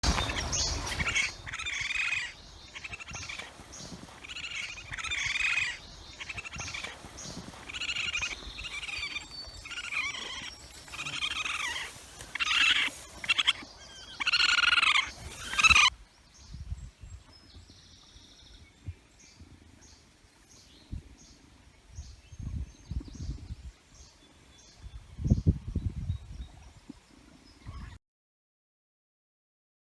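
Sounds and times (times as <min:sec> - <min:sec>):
bird-like animal calls: 0:00.0 - 0:15.9.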